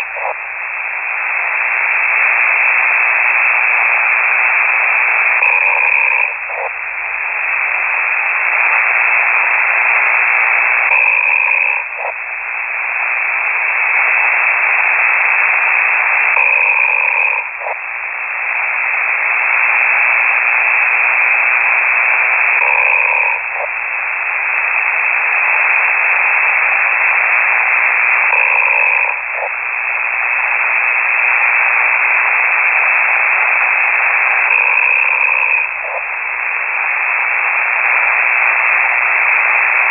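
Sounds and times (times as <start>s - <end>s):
snoring over shortwave radio: 0.0s - 39.9s.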